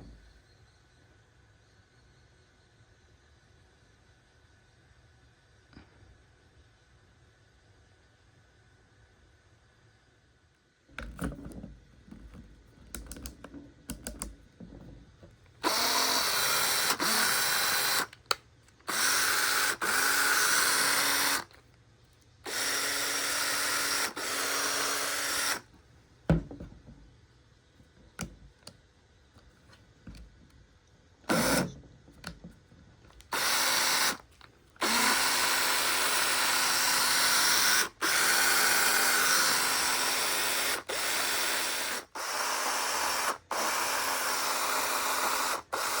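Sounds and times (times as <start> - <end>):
drill motor whirring: 15.6 - 21.6, 22.4 - 25.7, 31.3 - 31.8, 33.1 - 46.0.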